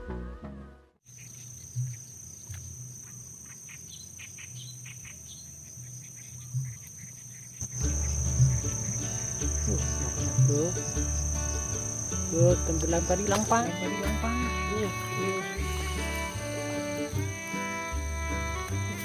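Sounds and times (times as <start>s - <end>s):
background music: 0.0s - 1.0s, 7.7s - 19.0s
insects chirring: 1.0s - 19.0s
bird chirps: 1.1s - 12.6s.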